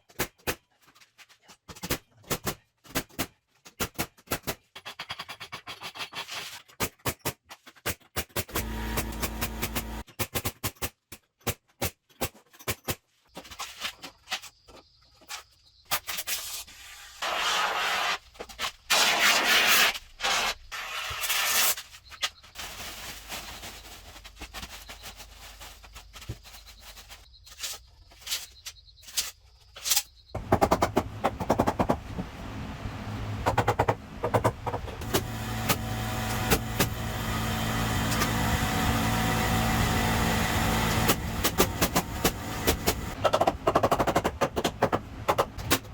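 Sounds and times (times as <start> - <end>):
power tool motor running: 8.5 - 10.0, 35.0 - 43.2.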